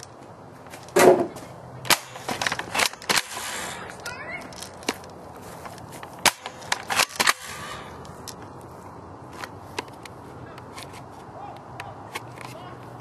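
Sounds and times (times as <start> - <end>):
airsoft guns firing: 6.2 - 7.8.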